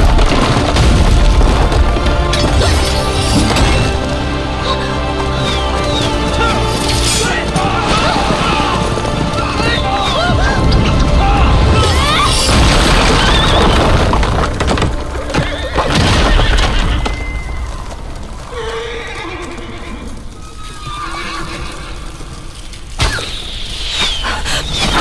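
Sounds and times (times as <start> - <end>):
hoofbeats: 0.0 - 23.0
dramatic background music: 0.0 - 25.0
horse neighing: 18.5 - 22.2.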